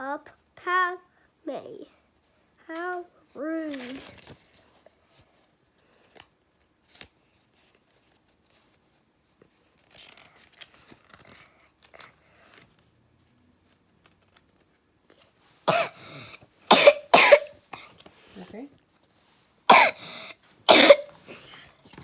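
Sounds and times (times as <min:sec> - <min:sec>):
faint handling clicks and rustles: 0:02.0 - 0:15.7, 0:17.6 - 0:19.7, 0:20.4 - 0:22.0.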